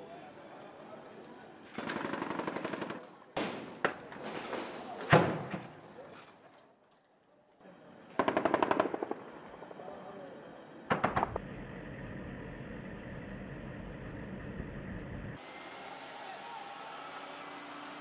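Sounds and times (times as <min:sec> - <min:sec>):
automatic gunfire burst: 0:01.8 - 0:03.0, 0:08.2 - 0:09.2.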